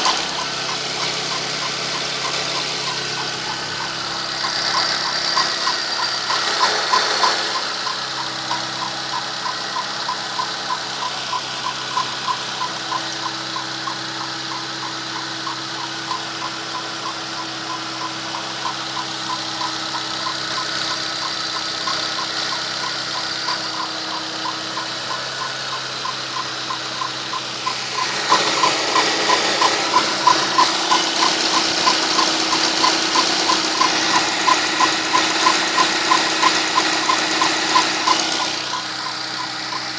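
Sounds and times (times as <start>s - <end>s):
car engine idling: 0.0s - 39.9s
rhythmic tapping engine knock: 0.0s - 39.9s.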